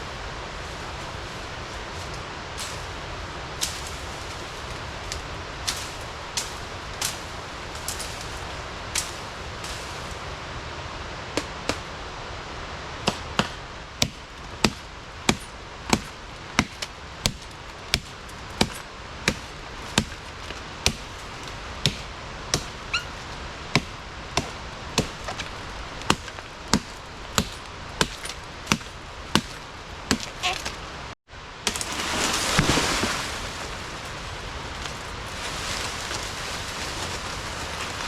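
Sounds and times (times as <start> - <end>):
flowing water rushing: 10.2 - 38.0
hand tool chopping wood: 13.1 - 21.1, 21.8 - 22.8, 23.7 - 30.8, 31.7 - 33.3.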